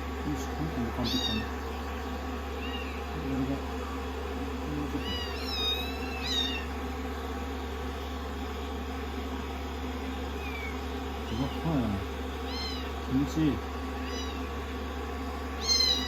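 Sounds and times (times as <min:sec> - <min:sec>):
kittens meowing: 0:01.0 - 0:01.6, 0:02.5 - 0:03.1, 0:04.9 - 0:06.7, 0:10.4 - 0:11.8, 0:12.4 - 0:13.0, 0:14.0 - 0:14.6, 0:15.6 - 0:16.0.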